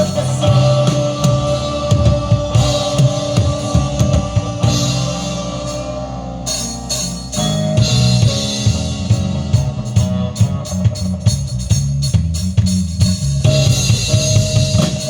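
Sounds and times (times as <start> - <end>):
bass notes: 0.0 - 15.0
drum kit and cymbals: 0.0 - 15.0.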